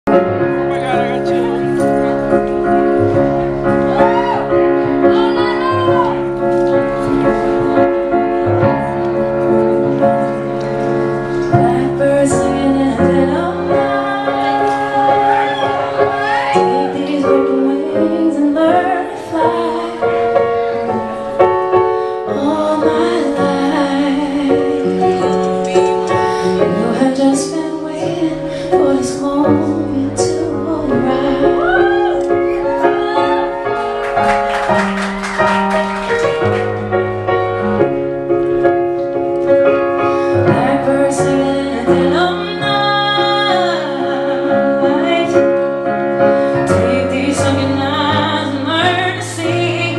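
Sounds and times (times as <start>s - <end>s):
piano chords: 0.0s - 49.9s
woman singing: 11.6s - 20.5s, 22.3s - 33.7s, 40.4s - 45.7s, 46.6s - 49.9s.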